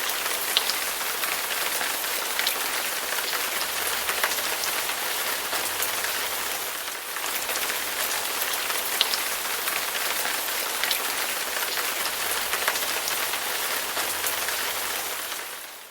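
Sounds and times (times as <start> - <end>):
steady rain hiss: 0.0 - 15.9.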